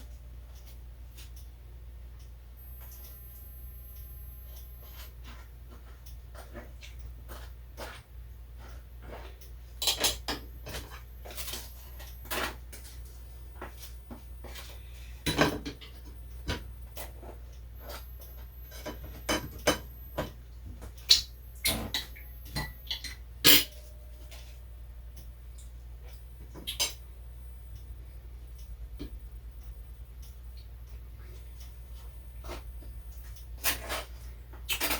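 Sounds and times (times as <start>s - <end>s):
utensils clinking against dishes: 21.1s - 24.6s.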